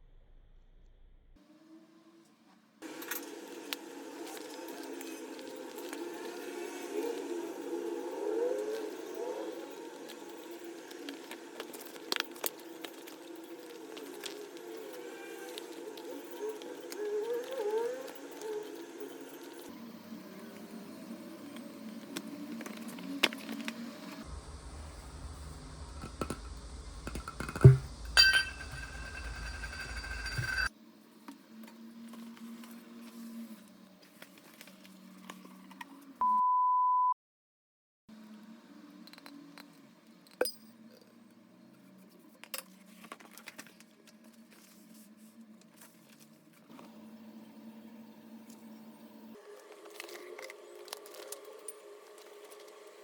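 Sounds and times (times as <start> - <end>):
steady low hum: 24.2 - 30.7
handling noises: 26.0 - 30.7
objects clicking and tapping: 26.0 - 30.7
ringing bell-like clink: 27.4 - 30.7.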